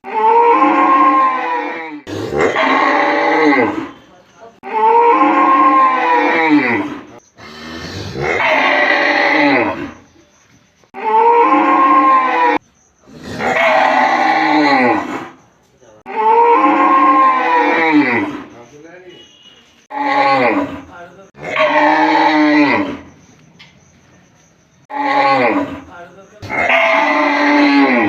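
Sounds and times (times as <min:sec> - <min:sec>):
cow mooing: 0:16.1 - 0:18.3.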